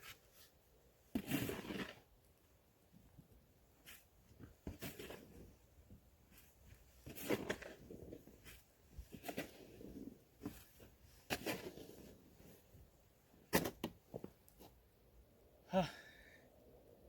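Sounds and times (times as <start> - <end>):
snow shovel scraping snow: 1.1 - 2.1, 3.8 - 5.7, 6.3 - 13.9.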